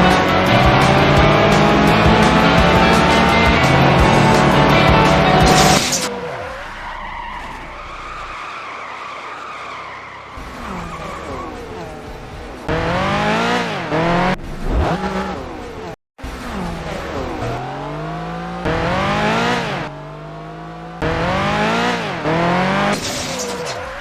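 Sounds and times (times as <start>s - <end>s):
loud music-like sound: 0.0s - 5.9s
race car engines revving past: 0.0s - 8.4s, 9.1s - 24.0s
tyre squeal: 1.7s - 11.9s.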